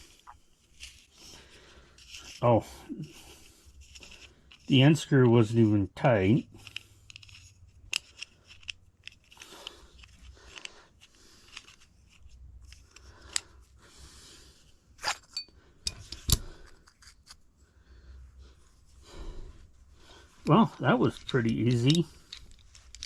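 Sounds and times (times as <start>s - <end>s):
metal parts clicking and clinking: 15.0s - 17.4s, 20.8s - 23.0s.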